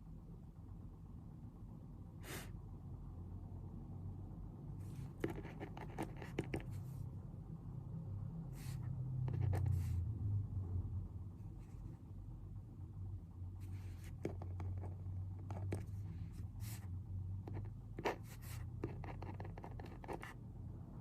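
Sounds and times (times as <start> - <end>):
steady low hum: 0.0 - 21.0
pen scratching on paper: 4.8 - 7.0, 8.6 - 10.0, 13.6 - 20.4.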